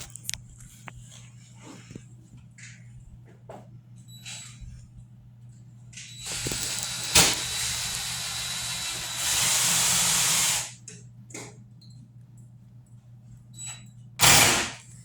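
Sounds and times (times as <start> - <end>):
loud hissing rush: 6.3 - 10.8.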